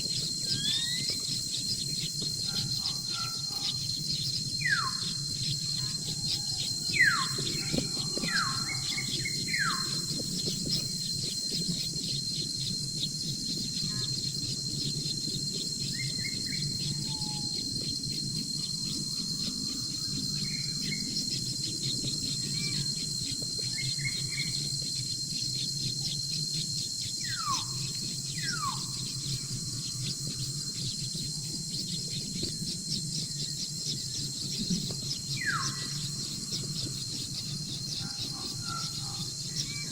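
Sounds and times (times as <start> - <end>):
constant low hum: 0.0 - 39.9
bird calls: 0.1 - 17.9, 27.2 - 39.9.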